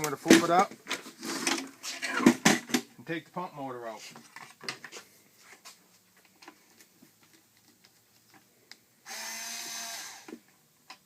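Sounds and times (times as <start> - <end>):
cordless screwdriver running: 9.1 - 10.3.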